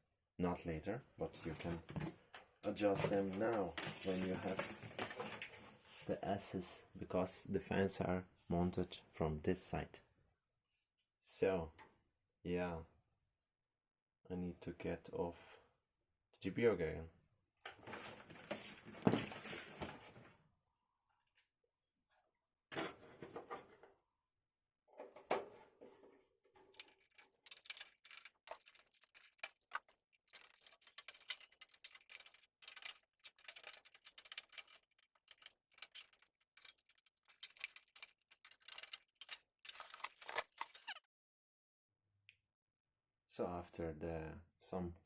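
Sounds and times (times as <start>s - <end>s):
plastic and metal parts handled: 1.4s - 6.1s, 17.7s - 20.3s, 25.0s - 41.0s.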